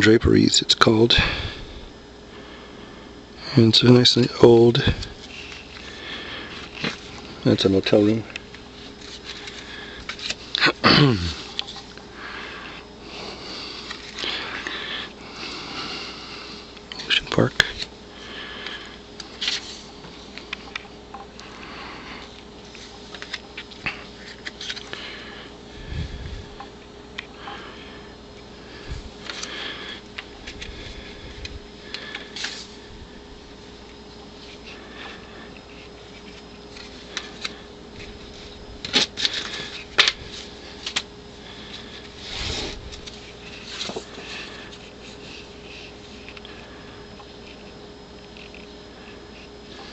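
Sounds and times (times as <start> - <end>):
faint steady hum: 0.0 - 49.9
paper rustling: 8.3 - 10.7, 13.8 - 14.8, 19.2 - 19.9, 22.6 - 25.2, 29.2 - 32.9, 34.3 - 46.7.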